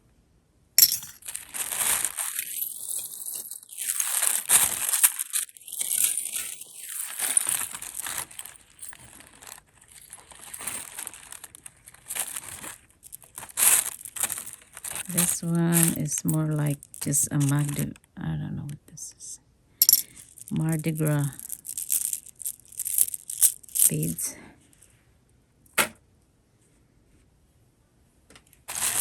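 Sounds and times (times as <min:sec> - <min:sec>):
plastic packaging crinkling: 0:01.2 - 0:18.0, 0:20.0 - 0:24.2, 0:28.7 - 0:29.0
jewelry clicking: 0:19.8 - 0:20.5.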